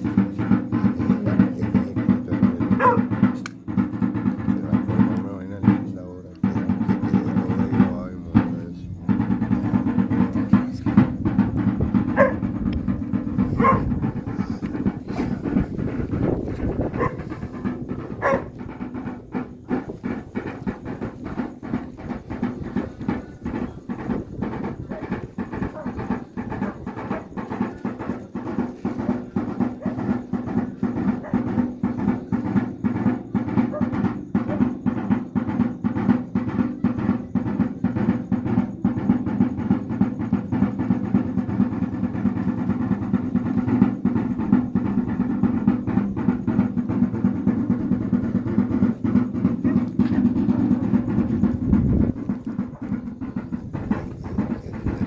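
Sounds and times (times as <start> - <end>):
double-headed drum beating: 0.0 - 55.0.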